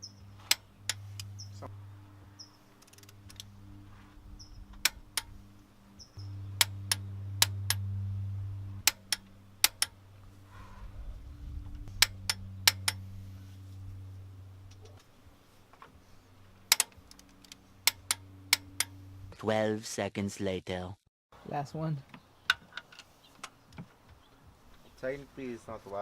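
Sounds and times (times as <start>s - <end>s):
low hum: 0.0s - 20.3s
torque wrench clicks: 2.8s - 3.5s, 8.8s - 10.0s, 12.0s - 13.0s, 16.7s - 19.0s.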